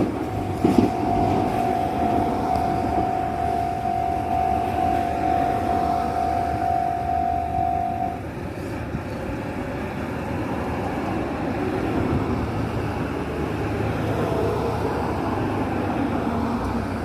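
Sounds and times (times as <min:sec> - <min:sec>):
level crossing alarm tone: 0:00.0 - 0:08.2
electric train rumbling past: 0:00.0 - 0:17.0.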